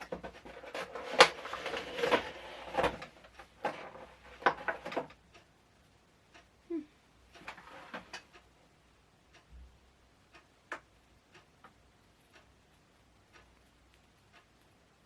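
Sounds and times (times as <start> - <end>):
knocks clicks and scraping rustles: 0.0 - 5.2.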